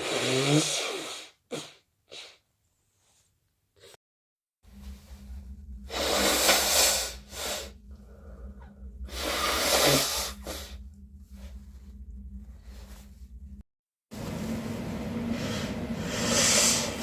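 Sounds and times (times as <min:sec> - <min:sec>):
person blowing nose: 0:00.0 - 0:02.4, 0:09.2 - 0:10.7
soft sniffs and breaths: 0:15.3 - 0:17.0.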